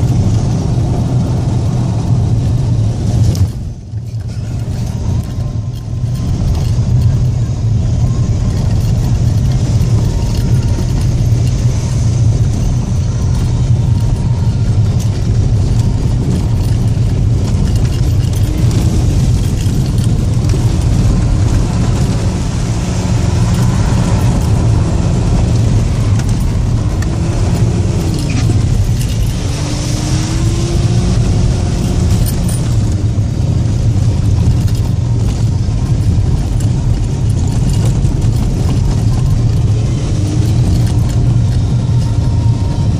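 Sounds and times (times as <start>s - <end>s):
diesel engine revving while driving: 0.0s - 42.9s.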